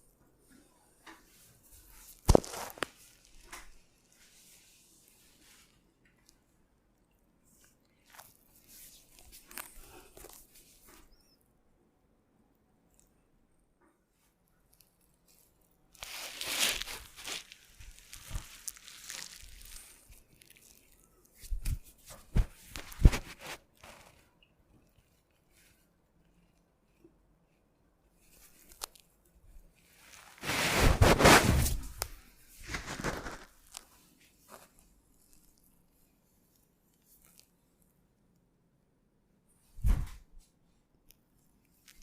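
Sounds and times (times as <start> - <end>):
hands rubbing on skin and cloth: 1.3 - 3.2, 21.4 - 24.2, 29.9 - 35.4.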